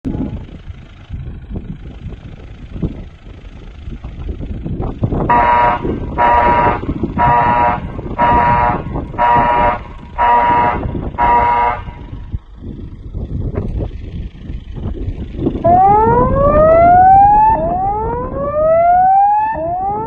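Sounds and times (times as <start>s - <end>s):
low rumbling noise: 0.0s - 20.0s
electronic siren beeps: 15.6s - 20.0s.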